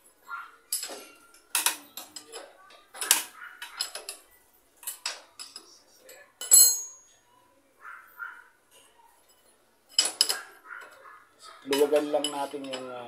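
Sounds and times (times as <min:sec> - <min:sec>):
metal tools clinking on wheel: 0:00.7 - 0:07.1, 0:08.7 - 0:13.0.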